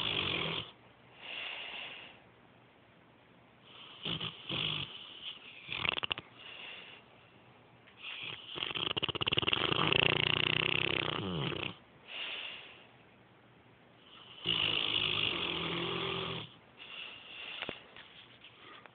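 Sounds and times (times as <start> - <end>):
rattling snore: 5.6 - 6.2, 8.0 - 11.8.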